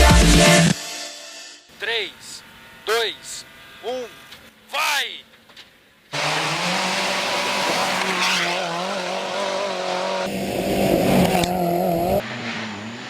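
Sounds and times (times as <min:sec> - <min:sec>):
rally car engine at high revs: 0:02.0 - 0:13.0
wheelspin on gravel: 0:06.1 - 0:11.7.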